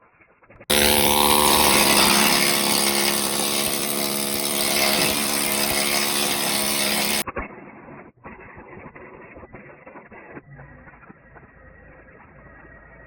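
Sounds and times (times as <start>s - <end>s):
power tool motor whine: 0.7s - 7.2s.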